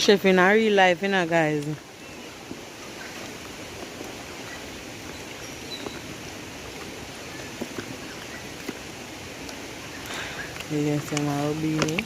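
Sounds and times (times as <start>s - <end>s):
river water rushing: 0.0s - 12.0s
faint clicks: 9.4s - 12.0s.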